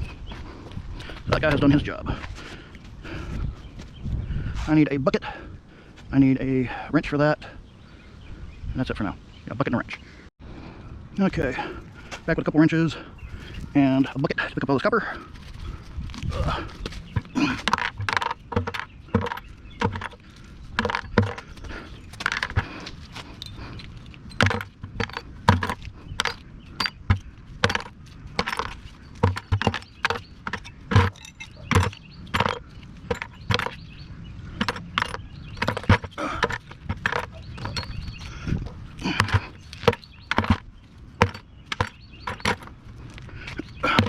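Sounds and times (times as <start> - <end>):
dull thuds: 16.2 - 22.8, 24.3 - 42.8, 43.7 - 44.0
scrap metal clinking and clanking: 20.8 - 33.8, 34.6 - 38.3, 41.2 - 42.8.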